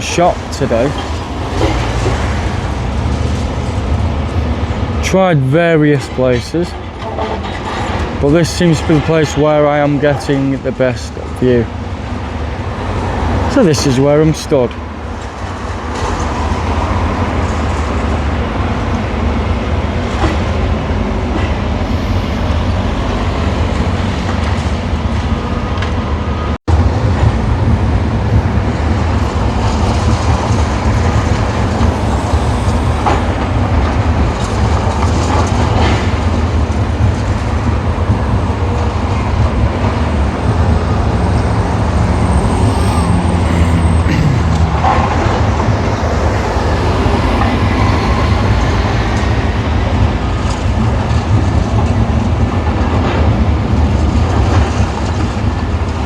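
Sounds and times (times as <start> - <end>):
low engine rumble: 0.0 - 6.4, 21.0 - 52.6.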